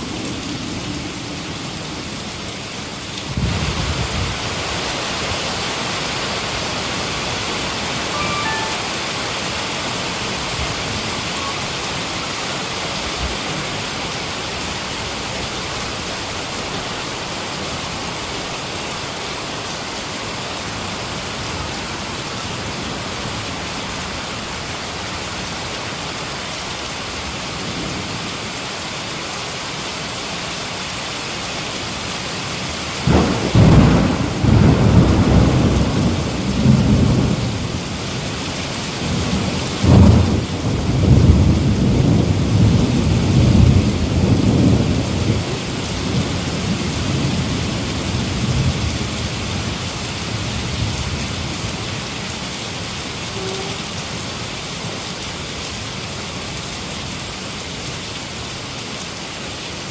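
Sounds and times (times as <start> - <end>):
heavy rain falling: 0.0 - 59.9
thunderclap rumbling: 33.0 - 37.8.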